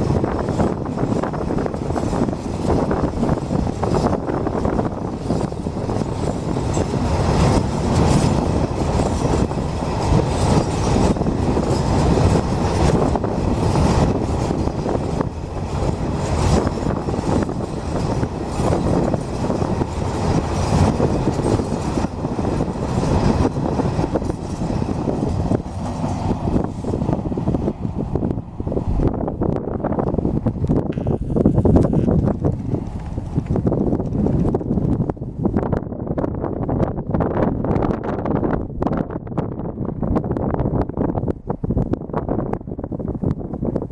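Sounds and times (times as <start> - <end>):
wheels clacking over rail joints: 0.0 - 35.2
freight train rumble: 0.0 - 43.9.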